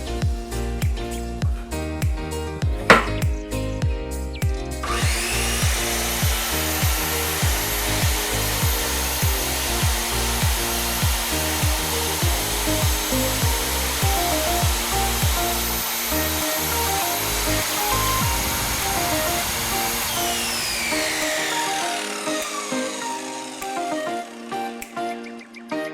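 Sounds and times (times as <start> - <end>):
background music with steady beat: 0.0 - 19.6
power saw motor whining: 4.8 - 25.0.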